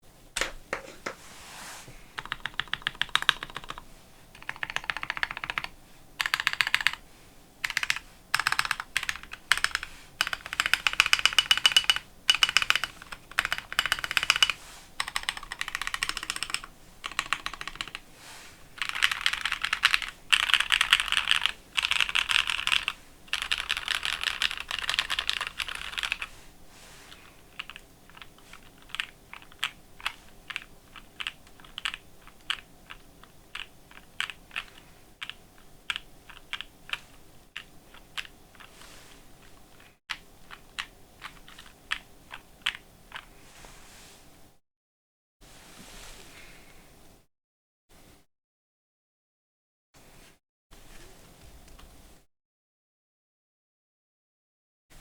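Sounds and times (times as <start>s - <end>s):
mechanical keyboard typing: 2.2s - 3.8s, 4.4s - 7.0s, 7.6s - 18.0s, 18.8s - 26.3s, 27.1s - 38.8s, 39.4s - 43.3s.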